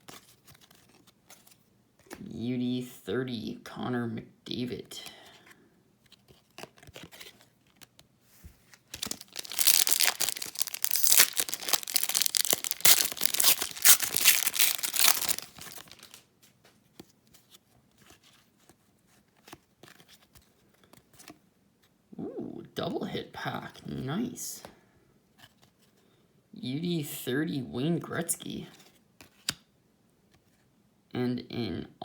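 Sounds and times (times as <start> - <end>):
card pack wrapper crackling: 8.7 - 16.2.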